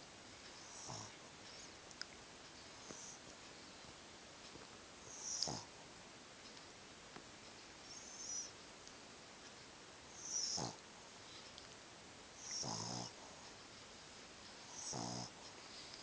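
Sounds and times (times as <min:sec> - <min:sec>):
snoring: 0:00.7 - 0:01.1, 0:05.1 - 0:05.7, 0:10.2 - 0:10.8, 0:12.4 - 0:13.2, 0:14.8 - 0:15.4.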